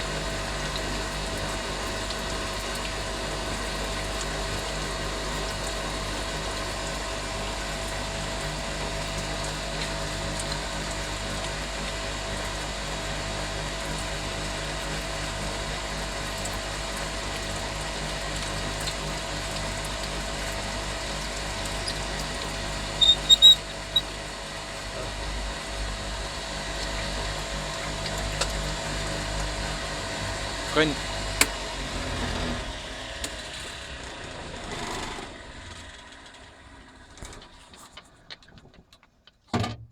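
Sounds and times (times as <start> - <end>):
coolant pump running: 0.0 - 39.9
metal lathe running: 19.6 - 33.2.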